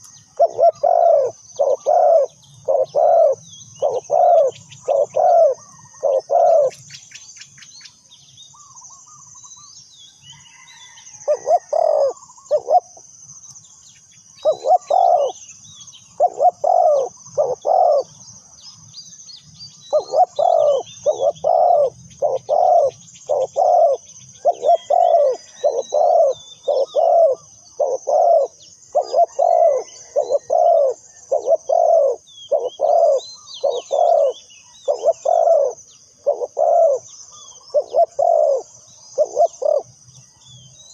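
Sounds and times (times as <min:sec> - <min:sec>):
dove cooing: 0:00.0 - 0:06.9, 0:10.6 - 0:13.1, 0:14.4 - 0:15.4, 0:16.1 - 0:18.2, 0:19.9 - 0:40.0
small birds chirping: 0:00.0 - 0:40.9.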